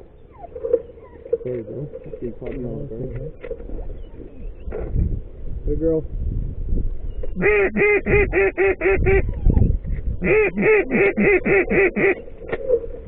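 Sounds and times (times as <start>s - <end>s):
duck quacking: 7.4s - 9.3s, 10.2s - 12.2s.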